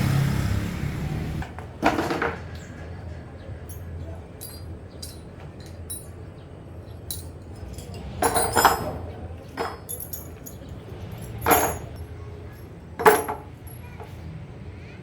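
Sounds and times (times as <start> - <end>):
metal hand tools clanking: 3.7 - 6.2, 7.1 - 12.1, 13.0 - 14.0.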